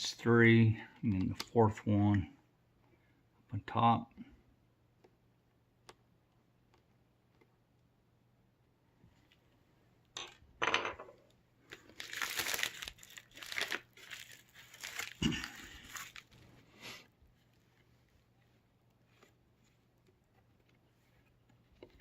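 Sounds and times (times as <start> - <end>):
laptop screen crinkling and rustling: 11.6 - 22.0.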